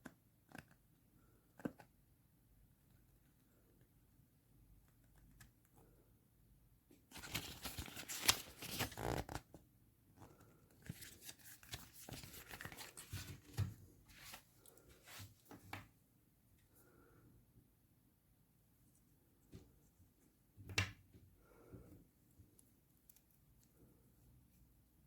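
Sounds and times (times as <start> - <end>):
packaging tearing and rustling: 7.1 - 9.4.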